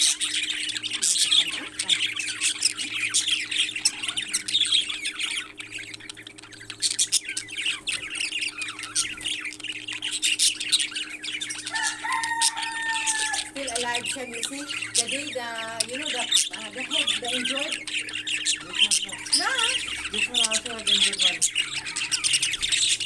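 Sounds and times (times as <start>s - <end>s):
parrots squawking and chattering: 0.0s - 23.0s
steady low hum: 0.0s - 23.0s.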